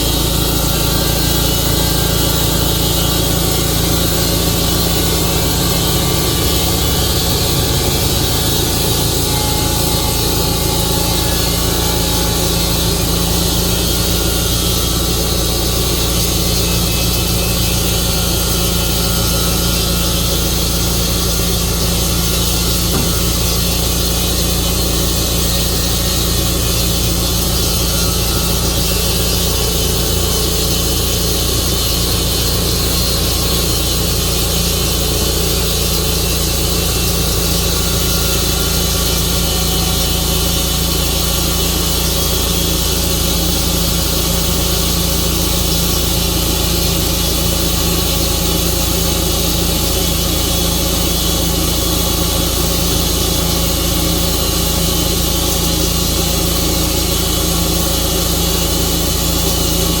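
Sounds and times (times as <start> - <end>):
sawmill engine running steadily: 0.0 - 60.0.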